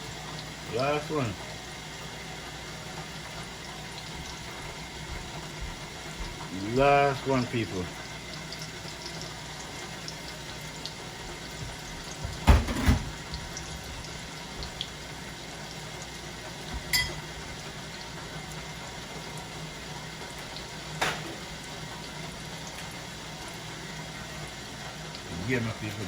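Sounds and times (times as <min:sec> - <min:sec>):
fritters sizzling in oil: 0:00.0 - 0:26.0.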